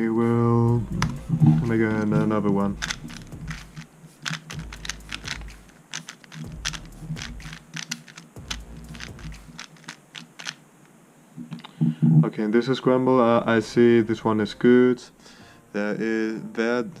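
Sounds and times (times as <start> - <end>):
puzzle cube plastic clicks: 2.4 - 10.6.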